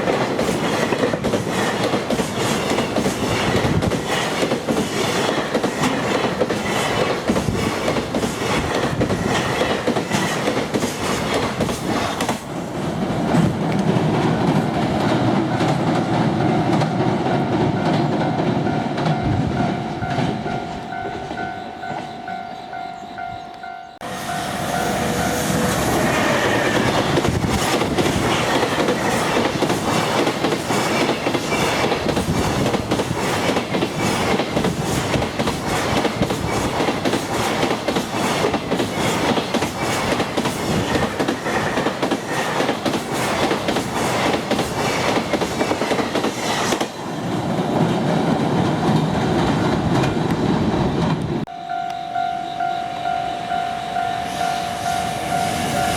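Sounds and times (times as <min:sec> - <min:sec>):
train wheels clattering over rails: 0:00.0 - 0:22.2, 0:24.8 - 0:51.5
level crossing bell ringing: 0:18.3 - 0:25.4, 0:51.5 - 0:55.9.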